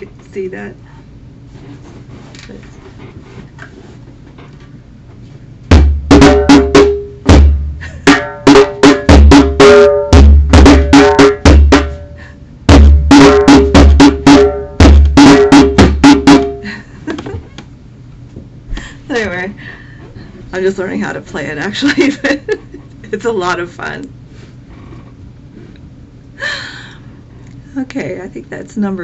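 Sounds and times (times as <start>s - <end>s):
djembe drumming: 5.7s - 12.1s, 12.7s - 16.6s.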